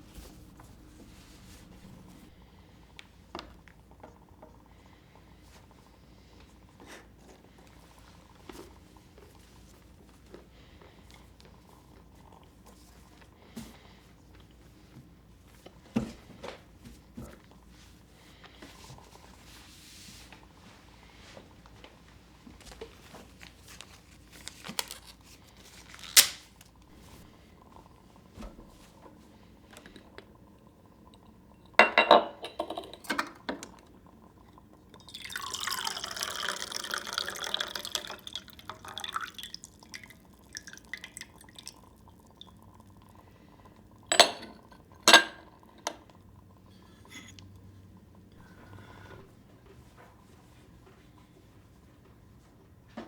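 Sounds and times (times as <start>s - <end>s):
glass and dishware clinking: 31.8s - 33.3s, 44.1s - 45.9s
liquid being poured: 32.6s - 46.3s.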